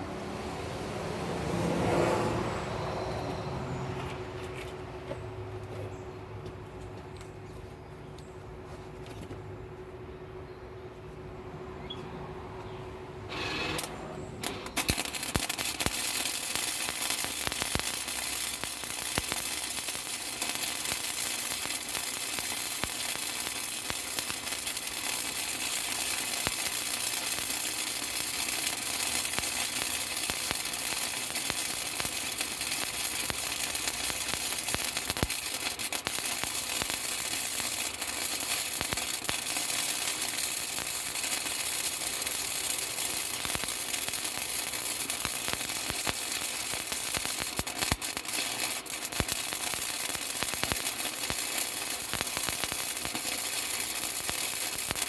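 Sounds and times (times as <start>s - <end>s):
dense crackling and clicking: 13.8s - 55.0s.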